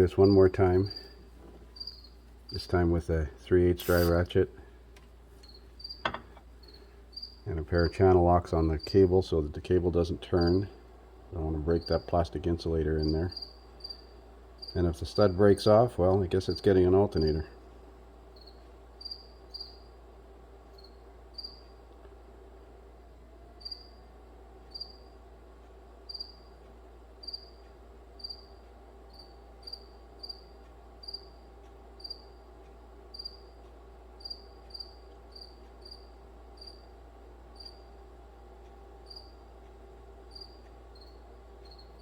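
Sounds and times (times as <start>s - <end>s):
steady low hum: 0.0s - 42.0s
cricket chirping: 1.8s - 2.2s, 5.4s - 7.4s, 13.0s - 14.8s, 18.4s - 19.9s, 20.8s - 21.7s, 23.6s - 24.0s, 24.7s - 25.1s, 26.1s - 26.6s, 27.2s - 27.6s, 28.2s - 31.4s, 32.0s - 32.4s, 33.1s - 33.5s, 34.2s - 36.9s, 37.6s - 37.9s, 39.0s - 39.4s, 40.3s - 42.0s.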